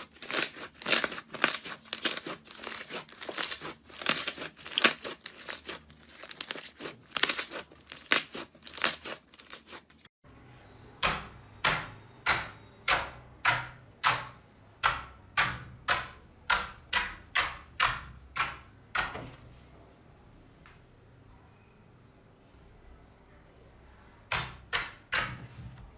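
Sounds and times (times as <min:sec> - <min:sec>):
crunchy slime crackling: 0:00.0 - 0:10.1.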